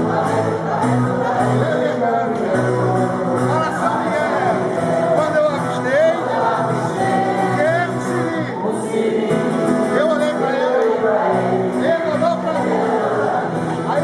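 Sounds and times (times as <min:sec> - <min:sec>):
music with singing voices: 0:00.0 - 0:14.0.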